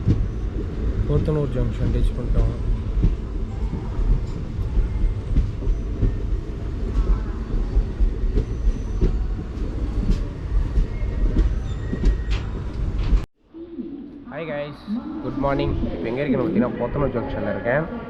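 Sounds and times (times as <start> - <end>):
train rumbling on rails: 0.0 - 13.3.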